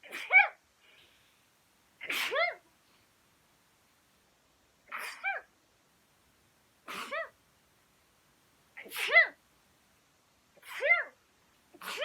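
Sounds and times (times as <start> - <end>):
woman sneezing: 0.0 - 0.6, 2.0 - 2.6, 4.9 - 5.5, 6.9 - 7.4, 8.8 - 9.4, 10.6 - 11.2, 11.8 - 12.0.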